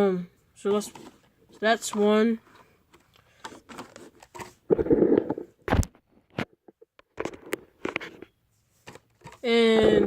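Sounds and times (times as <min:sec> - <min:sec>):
packages clicking and tapping: 0:01.8 - 0:04.6, 0:08.8 - 0:10.0.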